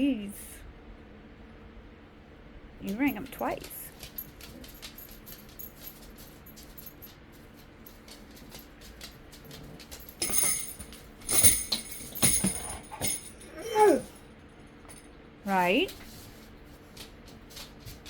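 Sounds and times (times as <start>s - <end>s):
jingle bells jangling: 3.1s - 7.2s, 7.9s - 14.2s
dog whining: 12.4s - 14.2s.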